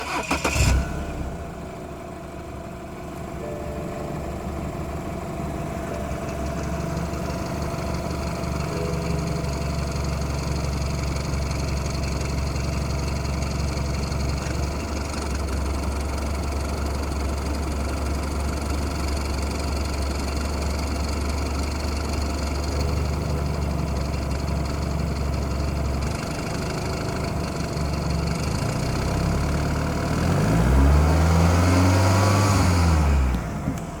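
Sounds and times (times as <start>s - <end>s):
engine ticking noise: 0.0s - 1.0s, 2.5s - 30.8s
car engine idling: 0.0s - 34.0s
engine revving: 28.5s - 33.4s.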